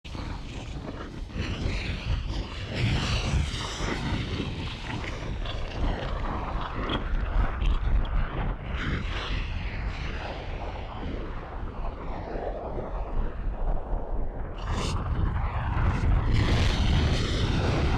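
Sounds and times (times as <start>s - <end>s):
deep volcanic rumble: 0.0s - 17.9s
lava crackling and hissing: 0.1s - 17.9s.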